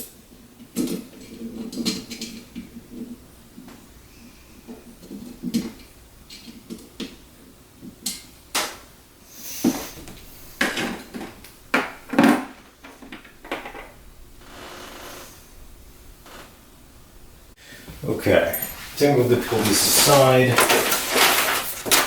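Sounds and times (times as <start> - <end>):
hard objects clicking and knocking: 10.0 - 14.0, 19.4 - 22.0
packaging rustling: 18.6 - 22.0.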